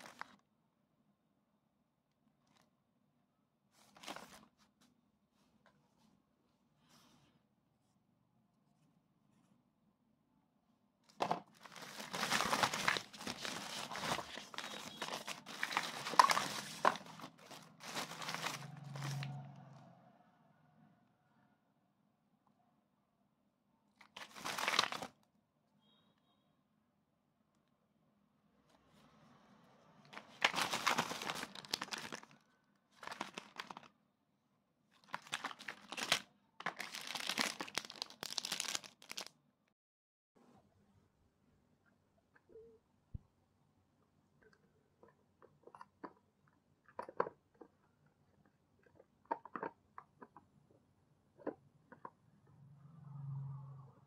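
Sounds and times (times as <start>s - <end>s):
packaging crinkling: 0.0s - 0.4s, 3.8s - 4.4s, 11.5s - 19.3s, 24.0s - 25.2s, 30.1s - 32.4s, 33.0s - 33.9s, 35.0s - 39.3s.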